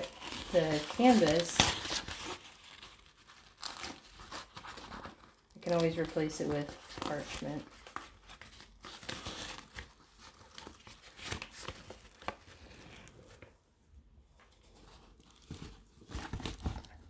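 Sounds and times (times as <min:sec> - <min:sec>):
plastic wrapping crinkling: 0:00.0 - 0:13.5.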